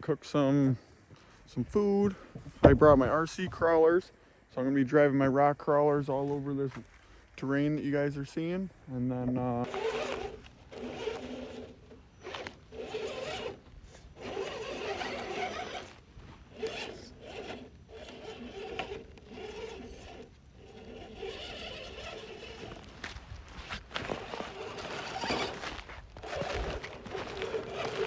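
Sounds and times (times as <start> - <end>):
electric motor and gears whirring: 9.4 - 28.0.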